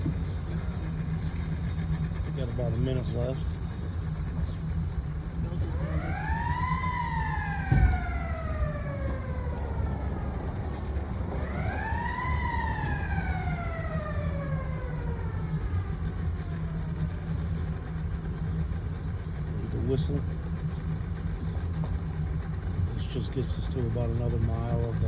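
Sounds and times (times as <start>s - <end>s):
boat engine running: 0.0s - 25.0s
bridge warning signal wailing: 0.0s - 25.0s
thump: 7.7s - 8.0s.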